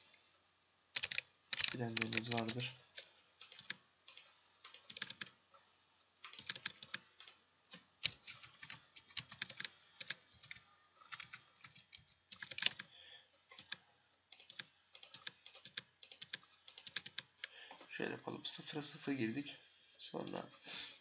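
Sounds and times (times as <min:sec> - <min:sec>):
computer keyboard typing: 0:01.0 - 0:05.4, 0:06.2 - 0:12.9, 0:13.5 - 0:17.5.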